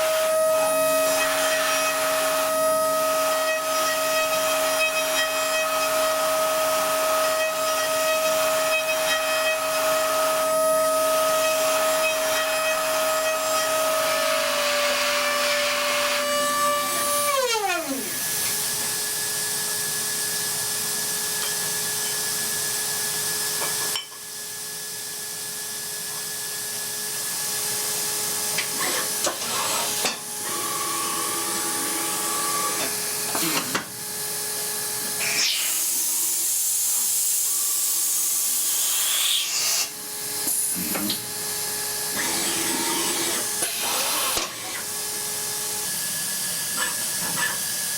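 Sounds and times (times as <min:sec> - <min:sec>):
milling machine spindle whining: 0:40.1 - 0:47.9.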